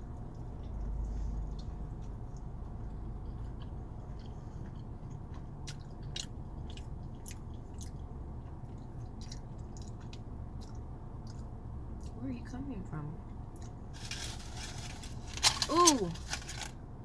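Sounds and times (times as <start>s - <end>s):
steady low hum: 0.0s - 17.0s
chewing and biting food: 0.1s - 12.2s, 13.5s - 14.0s.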